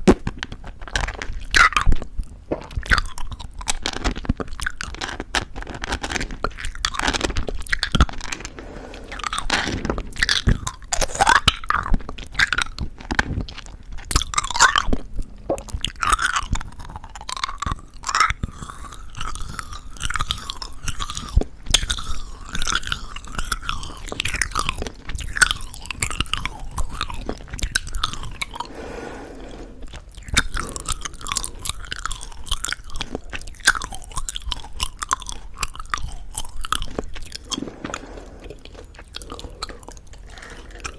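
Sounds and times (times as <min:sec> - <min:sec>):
candy crunching: 0:00.0 - 0:40.9
wet sticky chewing: 0:00.1 - 0:40.9
mouth clicks: 0:14.0 - 0:40.9.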